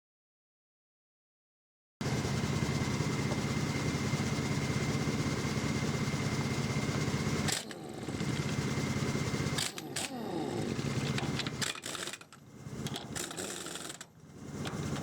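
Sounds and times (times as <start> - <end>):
pneumatic impact wrench rattling: 7.5 - 15.0.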